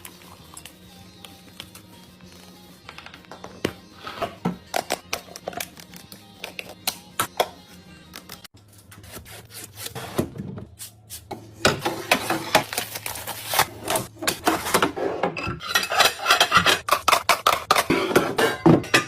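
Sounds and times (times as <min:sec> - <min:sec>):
packaging rubbing and scraping: 0:12.2 - 0:15.1.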